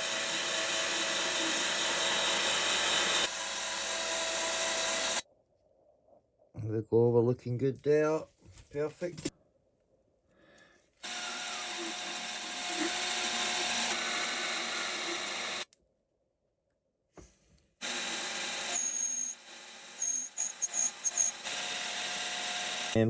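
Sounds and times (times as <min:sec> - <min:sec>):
power tool motor cutting: 0:00.0 - 0:05.2, 0:11.0 - 0:15.7, 0:17.8 - 0:23.0
short high-pitched squeals: 0:18.7 - 0:21.4.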